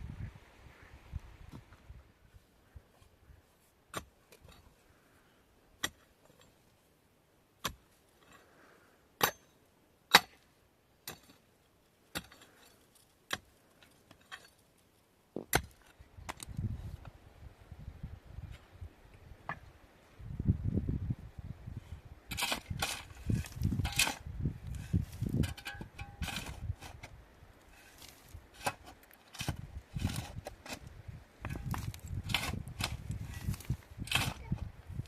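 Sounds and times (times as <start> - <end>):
rustle: 0.0 - 35.0.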